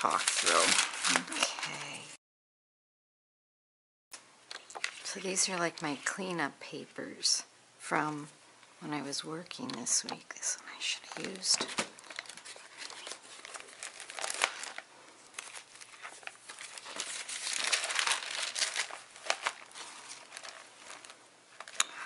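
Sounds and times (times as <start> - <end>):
paper rustling and crinkling: 0.0 - 2.0, 4.5 - 6.2, 11.0 - 21.8.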